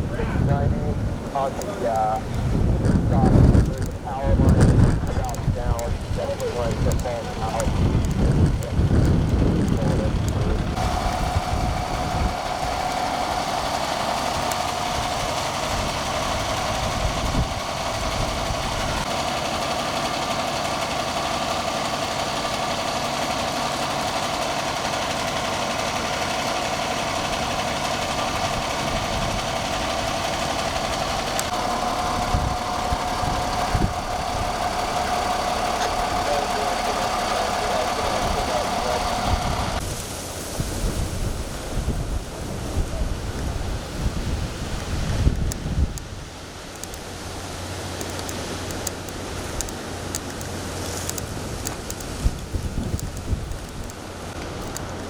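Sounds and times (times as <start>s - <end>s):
wind buffeting microphone: 0.0s - 19.1s, 27.1s - 46.3s, 51.2s - 54.0s
diesel engine idling with whine: 0.0s - 55.0s.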